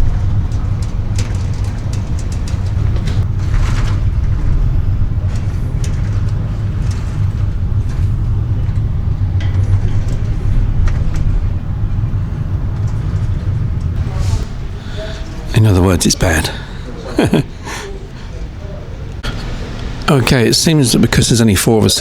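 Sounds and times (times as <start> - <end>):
light knocks and rattles: 0.0 - 15.5
ferry hull and engines rumbling: 0.0 - 22.0.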